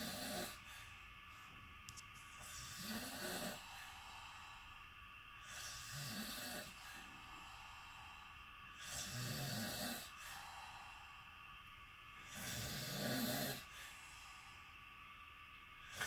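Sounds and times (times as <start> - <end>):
person snoring: 0.0 - 0.7, 2.4 - 3.8, 5.4 - 6.8, 8.8 - 10.2, 12.3 - 13.8
quiet breathing: 0.0 - 16.0.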